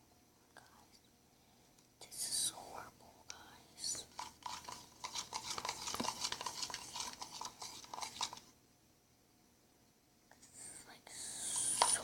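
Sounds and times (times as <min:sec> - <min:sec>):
slime stirred in container: 0:03.8 - 0:08.5, 0:11.6 - 0:12.0.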